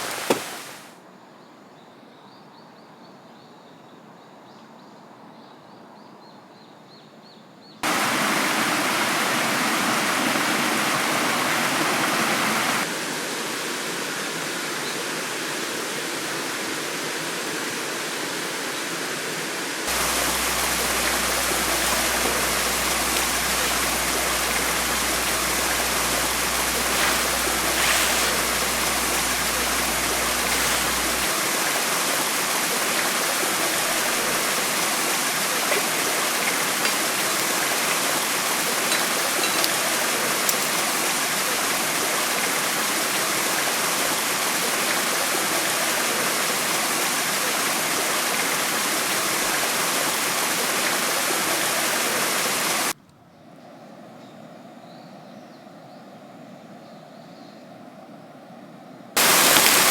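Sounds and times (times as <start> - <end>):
loud steady hiss: 0.0 - 1.0, 7.8 - 53.0, 59.2 - 59.9
low steady hum: 19.9 - 31.3.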